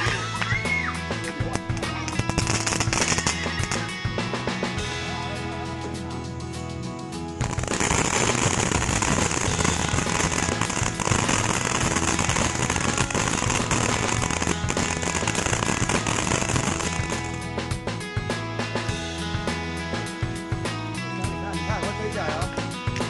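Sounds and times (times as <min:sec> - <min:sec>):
firework hissing and crackling: 0:00.0 - 0:00.8, 0:01.4 - 0:03.9, 0:07.4 - 0:17.7.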